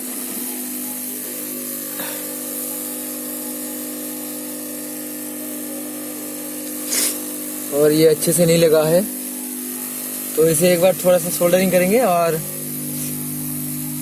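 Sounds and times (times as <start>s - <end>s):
hot-air station blowing: 0.0s - 14.0s.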